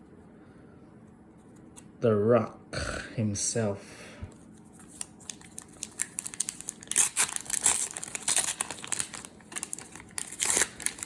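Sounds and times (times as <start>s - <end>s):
plastic wrapper crinkling and tearing: 4.7s - 11.0s.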